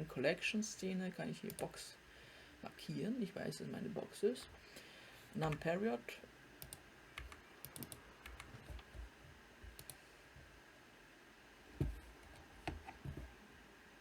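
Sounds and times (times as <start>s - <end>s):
computer keyboard and mouse clicks: 6.6s - 10.0s, 11.8s - 13.3s.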